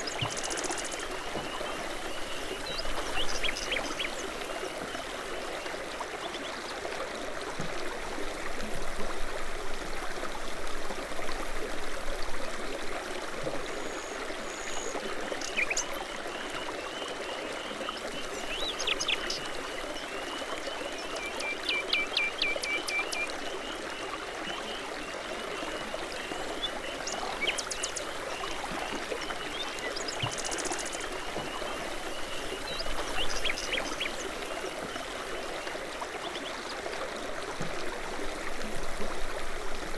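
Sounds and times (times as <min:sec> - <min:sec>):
brook babbling over stones: 0:00.0 - 0:39.9
songbirds chirping and trilling: 0:25.7 - 0:35.2.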